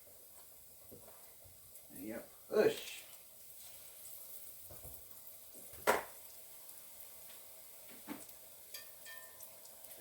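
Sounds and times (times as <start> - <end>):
batter sizzling in hot oil: 0.0 - 10.0
spoon knocking on pot: 8.0 - 9.5.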